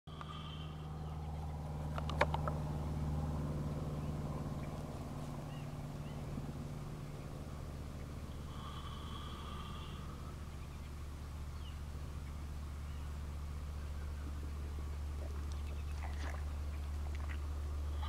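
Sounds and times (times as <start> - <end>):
horse snoring: 8.3 - 10.4.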